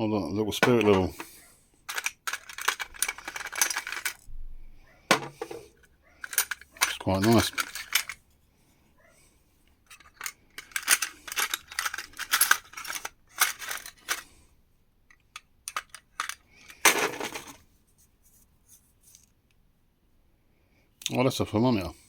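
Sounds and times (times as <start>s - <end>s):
metal hardware clinking in drawer: 0.6s - 1.3s, 1.9s - 4.2s, 5.1s - 8.2s, 9.9s - 14.2s, 15.7s - 17.6s.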